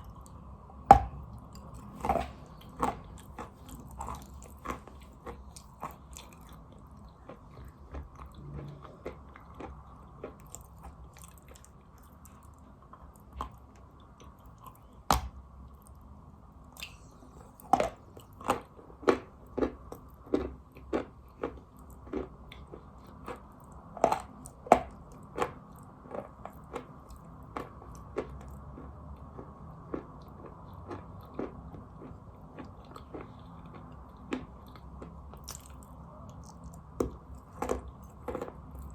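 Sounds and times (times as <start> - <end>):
chewing crackles: 0.0 - 16.0, 16.8 - 38.9.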